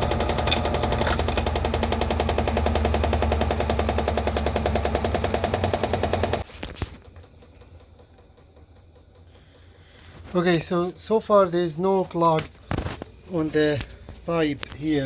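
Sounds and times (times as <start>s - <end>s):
drain pump humming and rattling: 0.0s - 10.4s.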